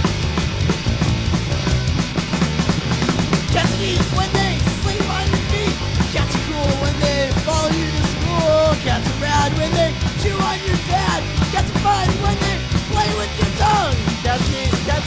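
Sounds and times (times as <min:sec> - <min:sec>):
punk rock band playing: 0:00.0 - 0:15.0.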